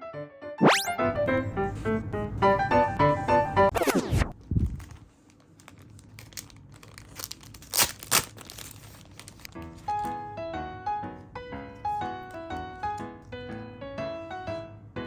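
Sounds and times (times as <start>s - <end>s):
background piano music: 0.0s - 4.2s, 8.4s - 15.0s
packaging crinkling and tearing: 4.4s - 10.2s.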